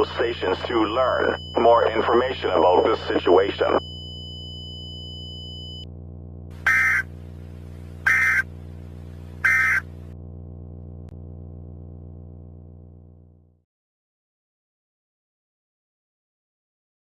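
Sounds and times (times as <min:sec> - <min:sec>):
high steady tone: 0:00.0 - 0:05.9, 0:06.6 - 0:08.7, 0:09.4 - 0:10.1
steady low hum: 0:00.0 - 0:13.6.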